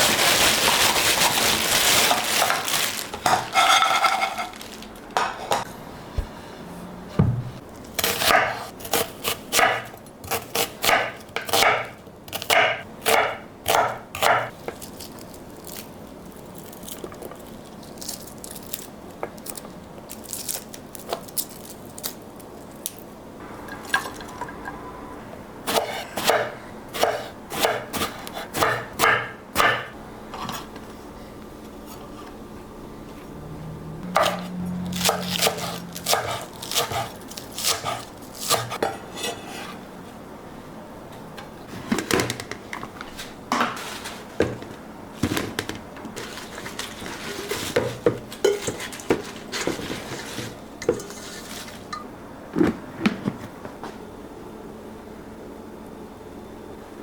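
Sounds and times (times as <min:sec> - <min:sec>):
dishes and utensils clattering: 0:03.2 - 0:05.7, 0:45.2 - 0:52.1.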